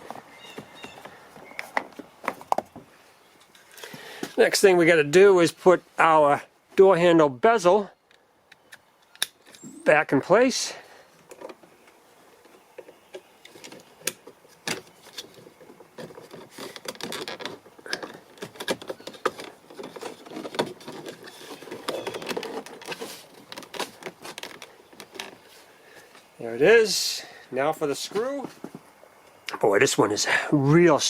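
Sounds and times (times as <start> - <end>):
plastic clicking and rubbing: 12.4 - 25.5.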